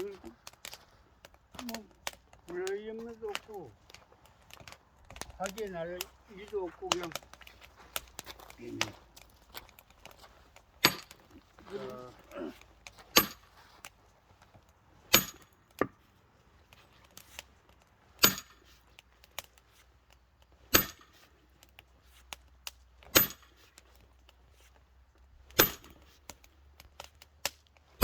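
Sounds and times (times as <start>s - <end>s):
axe chopping firewood: 0.0s - 14.0s, 15.1s - 16.0s, 17.0s - 19.5s, 20.4s - 24.1s, 25.4s - 28.0s
metallic ring of blade: 13.2s - 13.4s, 15.1s - 15.5s, 18.2s - 18.6s, 20.7s - 21.1s, 23.2s - 23.5s, 25.6s - 26.0s.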